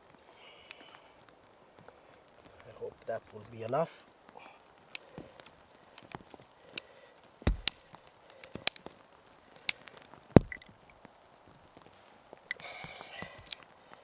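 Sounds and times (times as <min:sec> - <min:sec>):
heavy wooden thuds: 0:07.5 - 0:07.8
wood pieces knocking: 0:07.5 - 0:07.8.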